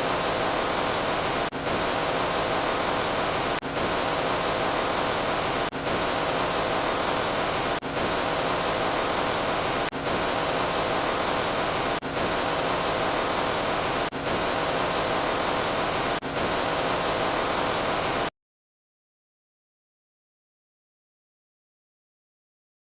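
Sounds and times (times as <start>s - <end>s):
static-like rushing noise: 0.0s - 18.3s.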